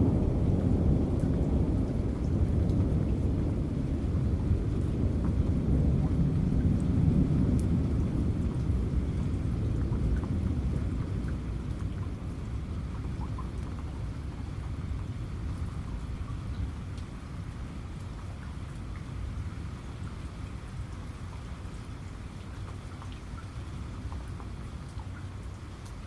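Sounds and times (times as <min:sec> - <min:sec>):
thunder rumbling: 0:00.0 - 0:17.0
steady rain: 0:00.0 - 0:26.0
raindrop ticks: 0:00.1 - 0:26.0.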